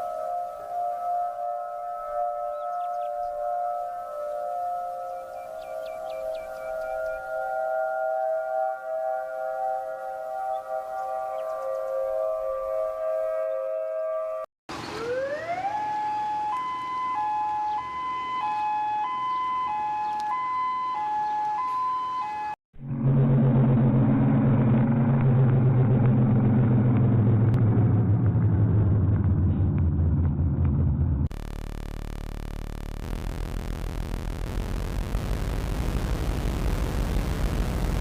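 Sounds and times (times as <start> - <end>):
two-tone alarm siren: 0.0 - 25.1
low drone: 22.8 - 38.0.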